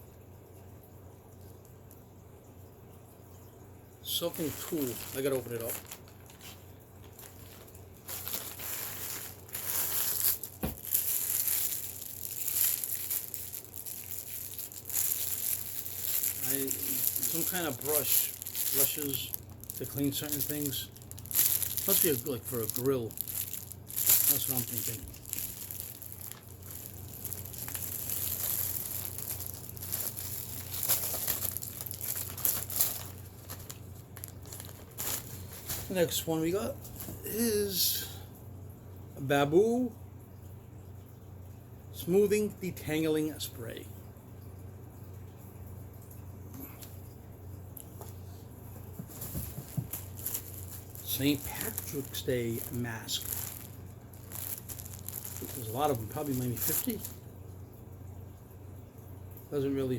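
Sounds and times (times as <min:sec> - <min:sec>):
packaging tearing and crinkling: 0:04.2 - 0:36.2, 0:49.0 - 0:57.2.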